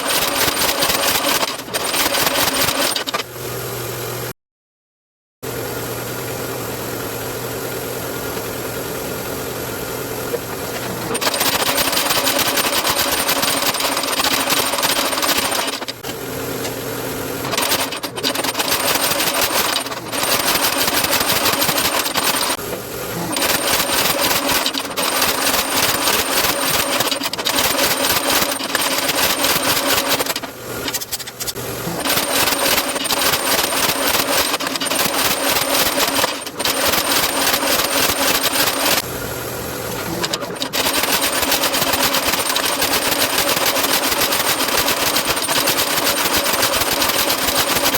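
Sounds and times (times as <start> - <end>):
power hammer motor running: 10.0 - 47.9.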